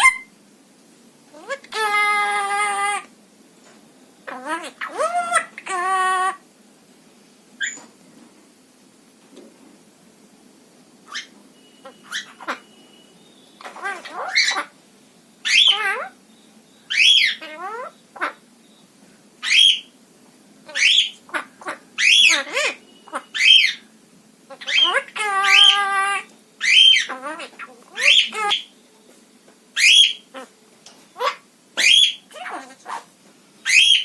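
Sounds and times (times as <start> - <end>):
parrot squawking: 0.0 - 0.3, 1.3 - 3.1, 4.2 - 6.4, 11.1 - 12.8, 13.6 - 14.8, 15.4 - 16.2, 16.9 - 18.4, 19.4 - 19.9, 20.6 - 23.9, 24.5 - 28.7, 29.8 - 30.6, 31.2 - 34.0.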